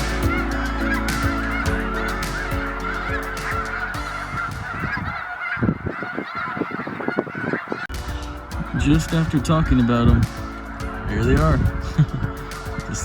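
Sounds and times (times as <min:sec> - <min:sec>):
flock of geese calling: 0:00.0 - 0:08.0.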